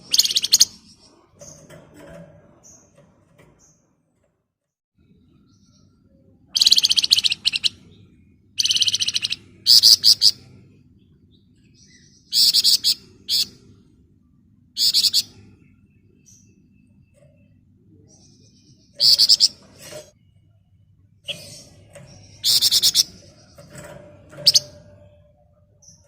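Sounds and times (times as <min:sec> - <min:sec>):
songbird rattling trill: 0:00.0 - 0:00.8, 0:06.6 - 0:07.7, 0:08.6 - 0:10.4, 0:21.3 - 0:25.2.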